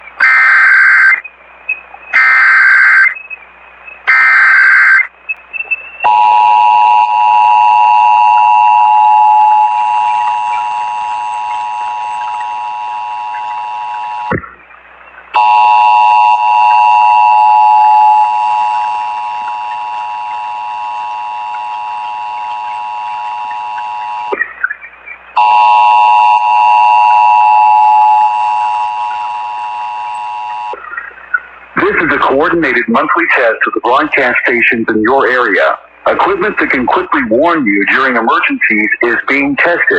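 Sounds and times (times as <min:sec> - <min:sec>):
digital data bursts: 0:00.0 - 0:06.2, 0:07.0 - 0:39.9.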